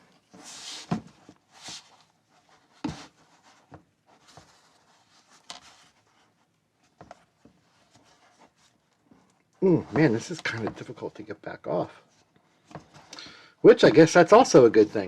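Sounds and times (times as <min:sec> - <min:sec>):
rubbing and scraping of case: 0:00.0 - 0:11.0.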